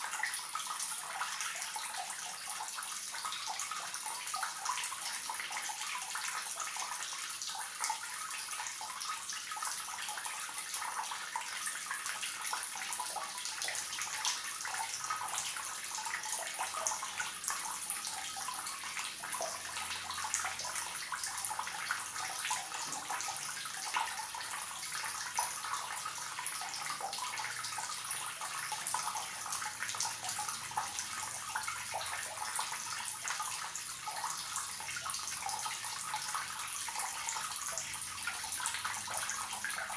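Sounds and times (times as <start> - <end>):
water trickling from tap: 0.0 - 39.9.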